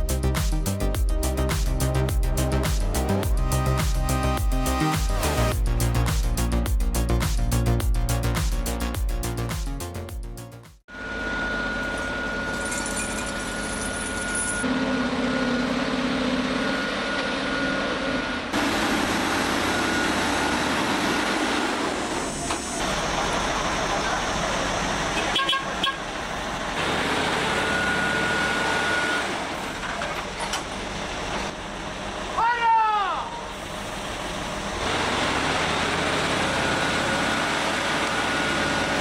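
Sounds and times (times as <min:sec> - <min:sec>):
heavy vehicle engine: 0:13.6 - 0:32.4, 0:33.4 - 0:39.0
road noise: 0:14.7 - 0:32.5, 0:33.2 - 0:39.0.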